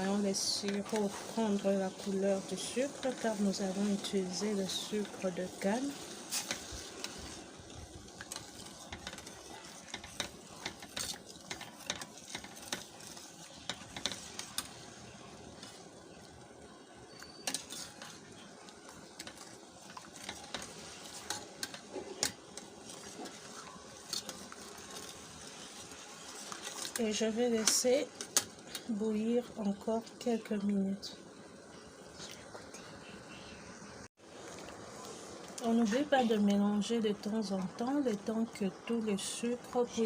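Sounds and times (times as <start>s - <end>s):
spoon scraping a pot: 0.0s - 14.9s, 17.1s - 28.9s
steady hiss: 0.0s - 40.0s.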